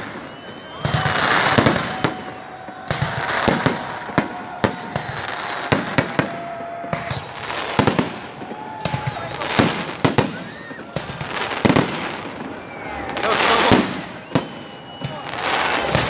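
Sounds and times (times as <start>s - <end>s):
firework bangs: 0.0s - 16.0s
fireworks crackling: 0.0s - 16.0s.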